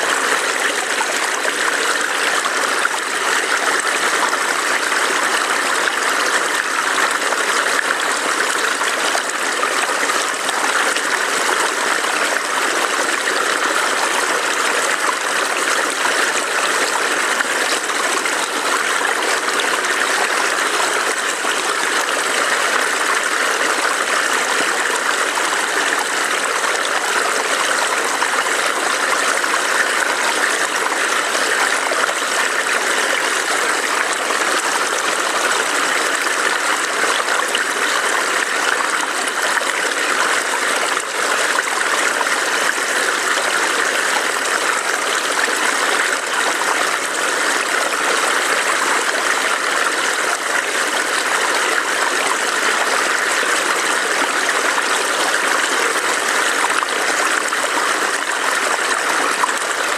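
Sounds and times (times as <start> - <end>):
stream trickling over rocks: 0.0 - 59.9.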